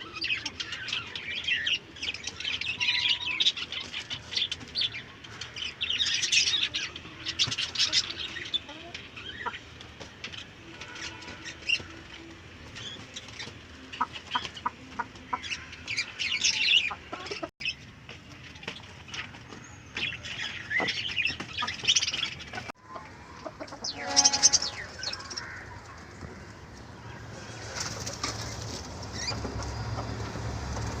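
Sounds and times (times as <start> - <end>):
chickens clucking and chirping: 0.0 - 31.0
chickens flapping wings: 27.3 - 31.0.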